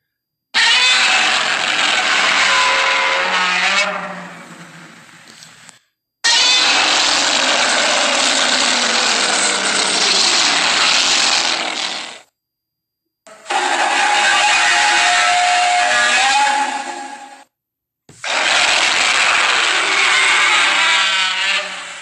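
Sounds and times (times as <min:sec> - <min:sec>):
monster roar: 0:00.6 - 0:05.0, 0:06.3 - 0:12.2, 0:18.2 - 0:22.0.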